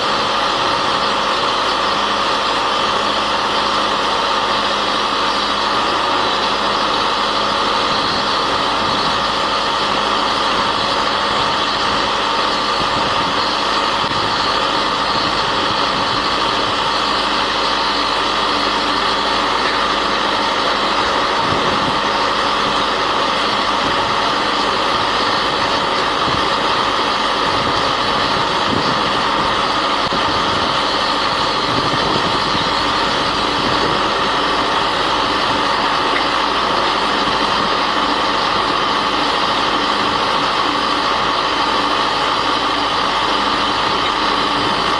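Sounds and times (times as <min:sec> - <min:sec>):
drilling rig engine running: 0:00.0 - 0:44.9.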